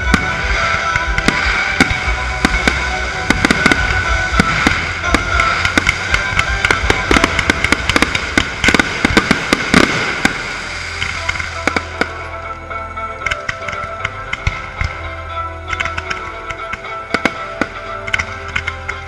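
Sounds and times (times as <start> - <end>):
fireworks bangs and crackling: 0.0 - 12.4, 13.1 - 19.0
music: 0.0 - 19.0.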